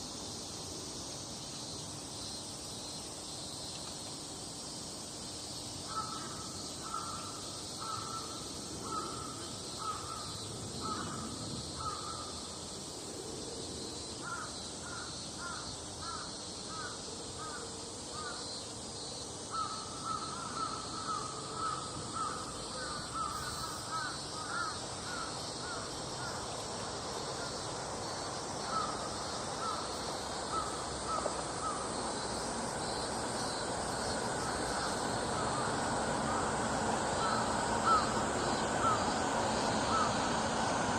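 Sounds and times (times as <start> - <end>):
steady high hiss: 0.0 - 40.9
crows cawing: 5.9 - 12.3, 14.2 - 17.6, 19.5 - 26.4, 28.7 - 29.0, 37.2 - 38.1, 38.8 - 39.1, 39.9 - 40.2.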